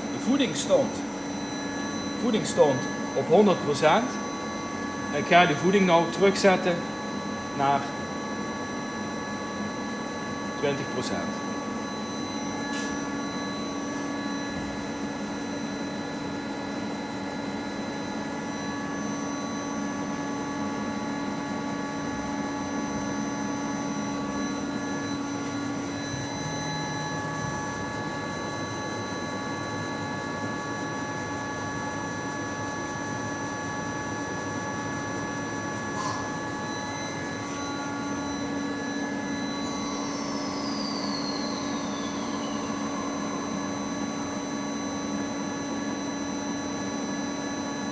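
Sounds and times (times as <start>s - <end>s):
high machine whines: 0.0s - 47.9s.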